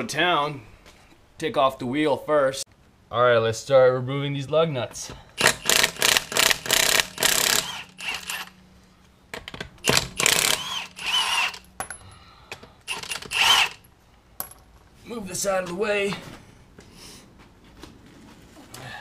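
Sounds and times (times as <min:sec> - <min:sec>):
impact gun bursts: 0:05.4 - 0:08.5, 0:09.8 - 0:11.6.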